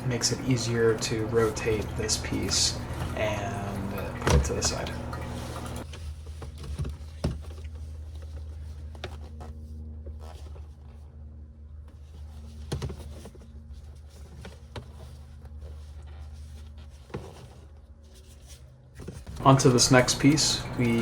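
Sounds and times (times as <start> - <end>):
steady low hum: 0.0 - 5.8, 19.4 - 21.0.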